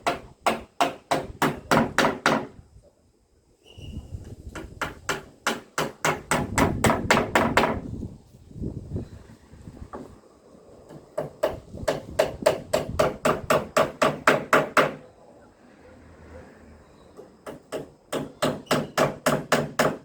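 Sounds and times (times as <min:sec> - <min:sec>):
hammer blows on wood: 0:04.5 - 0:07.9.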